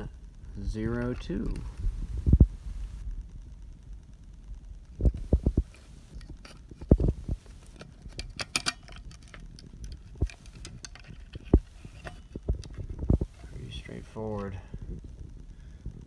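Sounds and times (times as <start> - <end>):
plastic radio handling clicks: 0.9 - 1.8, 5.0 - 14.6.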